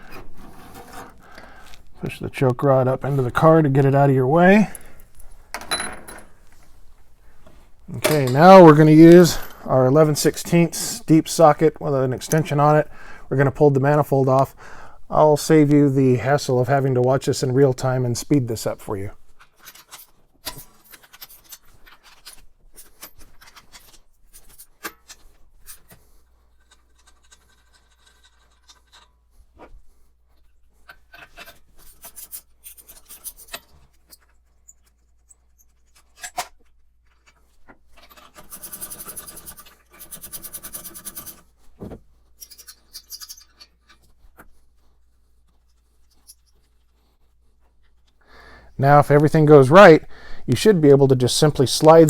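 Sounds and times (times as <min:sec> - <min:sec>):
metal scraping: 0:00.0 - 0:06.6
metal clinks: 0:04.7 - 0:06.4.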